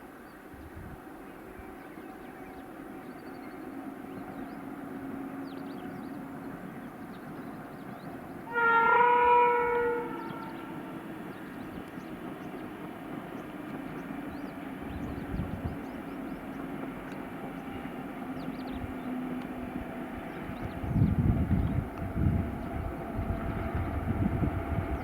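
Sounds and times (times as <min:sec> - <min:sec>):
locomotive horn blast: 0:08.4 - 0:11.0.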